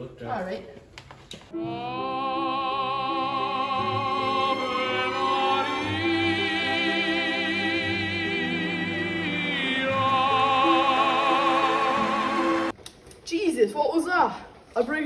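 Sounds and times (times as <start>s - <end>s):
operatic singing: 1.5s - 12.8s
orchestra playing: 1.6s - 12.8s.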